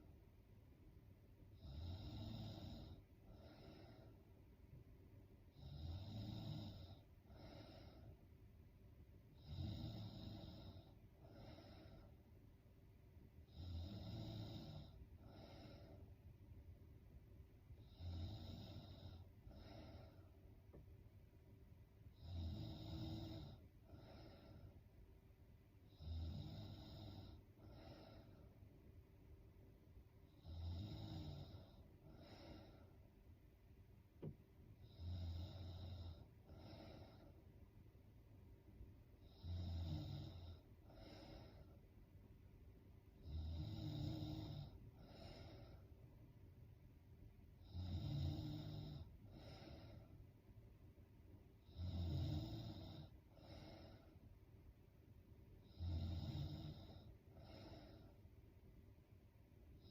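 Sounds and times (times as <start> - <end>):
woman snoring: 1.6 - 4.1, 5.5 - 8.1, 9.4 - 12.1, 13.5 - 16.0, 17.8 - 20.2, 22.2 - 24.7, 25.9 - 28.4, 30.3 - 32.8, 34.2 - 37.2, 39.2 - 41.8, 43.2 - 45.8, 47.6 - 50.1, 51.6 - 54.1, 55.6 - 58.1.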